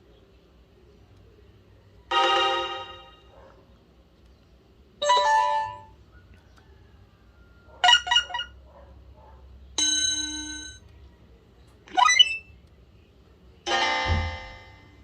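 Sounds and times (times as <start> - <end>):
phone alert tones: 5.0 - 5.9, 11.9 - 12.4, 13.7 - 15.0.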